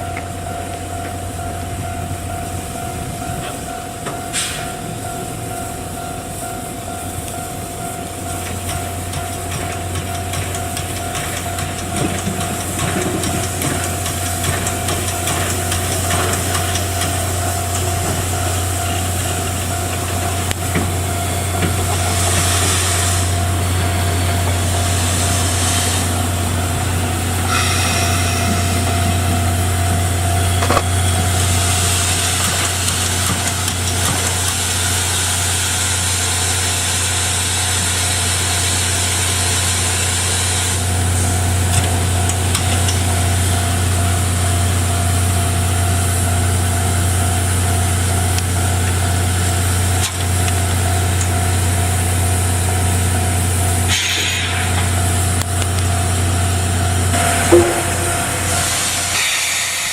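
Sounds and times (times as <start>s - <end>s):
steam hissing: 6.3s - 44.4s, 50.6s - 55.4s, 57.1s - 59.9s
low hum: 56.7s - 59.9s
constant tone: 57.1s - 59.8s.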